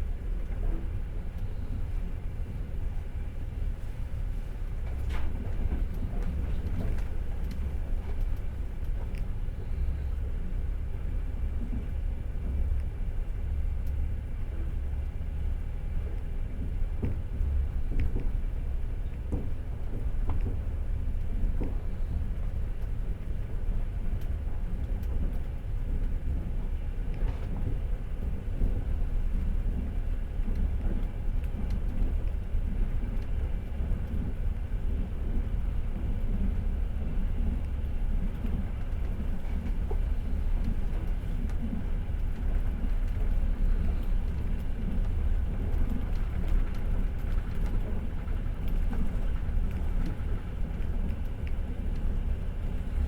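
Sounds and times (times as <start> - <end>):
train wheels rumbling: 15.5 - 53.0.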